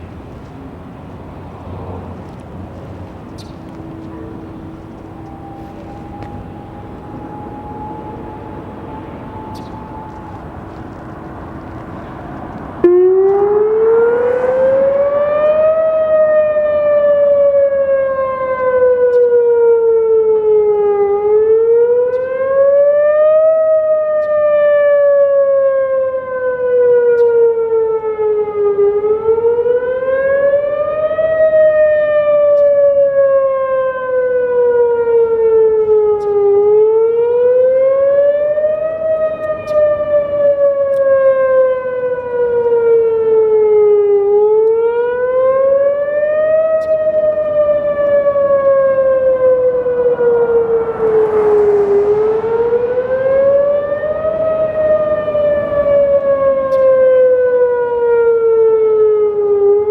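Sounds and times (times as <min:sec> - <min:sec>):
warning siren wailing: 0:01.3 - 0:59.9.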